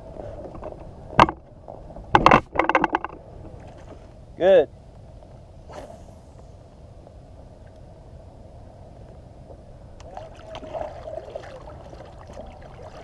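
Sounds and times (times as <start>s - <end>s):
water rumble: 5.6s - 13.0s.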